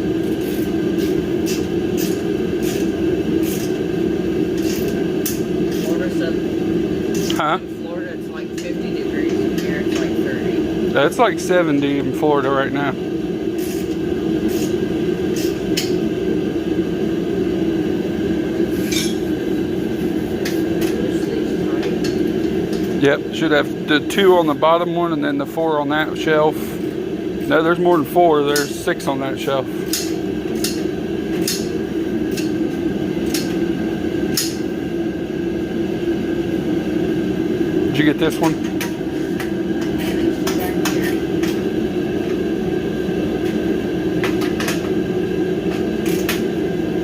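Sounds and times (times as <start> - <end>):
steady mechanical drone: 0.0 - 47.0.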